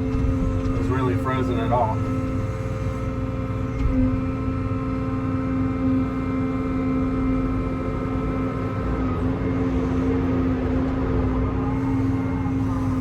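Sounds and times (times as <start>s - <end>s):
excavator diesel engine rumble: 0.0s - 13.0s
steady whine: 0.0s - 13.0s.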